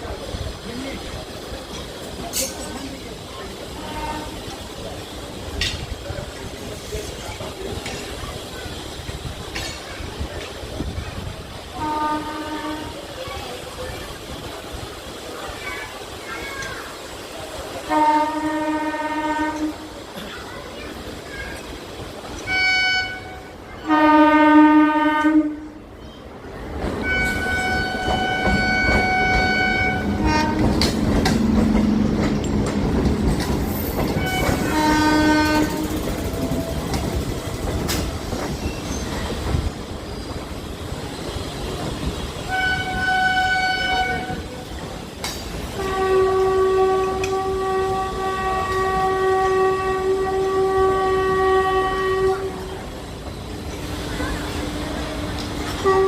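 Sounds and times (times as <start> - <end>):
train rumbling on track: 0.0 - 56.0
train horn blasts: 3.8 - 4.4, 11.8 - 13.0, 17.9 - 19.9, 22.5 - 25.7, 27.0 - 30.8, 34.2 - 36.0, 42.5 - 44.4, 45.7 - 52.8, 55.7 - 56.0.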